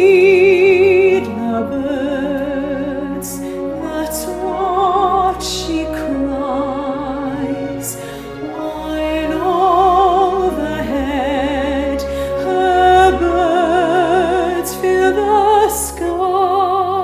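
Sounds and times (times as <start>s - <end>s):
classical singing voice with vibrato: 0.0s - 17.0s
steady musical accompaniment: 0.0s - 17.0s.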